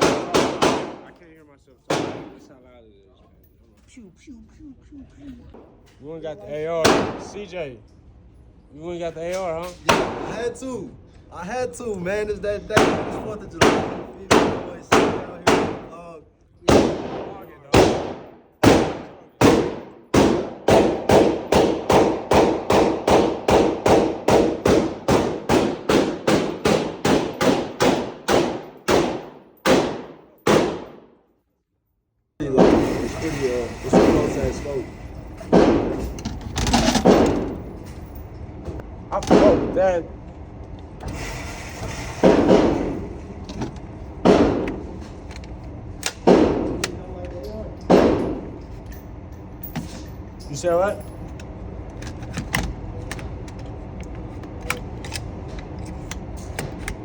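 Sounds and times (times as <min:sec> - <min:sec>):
gunshots with echo: 0:00.0 - 0:01.2, 0:01.9 - 0:02.4, 0:06.8 - 0:07.4, 0:09.9 - 0:10.3, 0:12.7 - 0:15.9, 0:16.7 - 0:31.1
semi-automatic gunfire: 0:00.0 - 0:01.2, 0:01.9 - 0:02.4, 0:12.8 - 0:15.9, 0:16.7 - 0:31.1.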